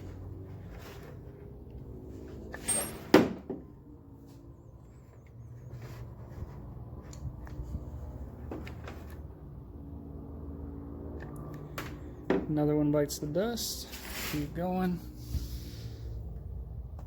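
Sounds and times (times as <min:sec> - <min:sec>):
engine running rough: 0:00.0 - 0:12.5.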